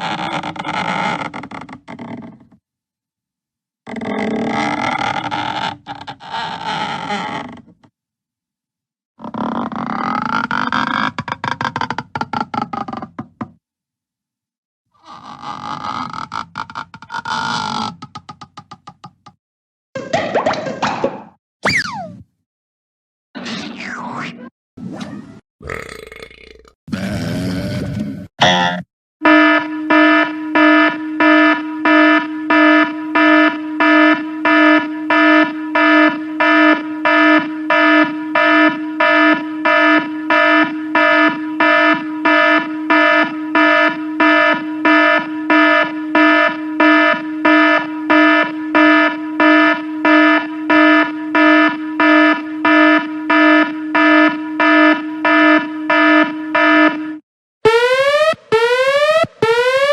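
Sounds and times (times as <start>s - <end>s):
alarm buzzer beeping: 29.2s - 59.9s.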